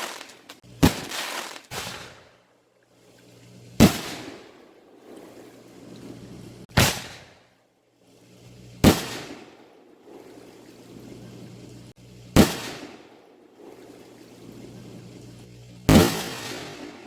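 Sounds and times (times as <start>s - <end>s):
loud firework bangs: 0.0s - 2.3s, 3.8s - 4.4s, 6.7s - 7.5s, 8.8s - 9.5s, 12.4s - 13.1s, 15.9s - 17.0s.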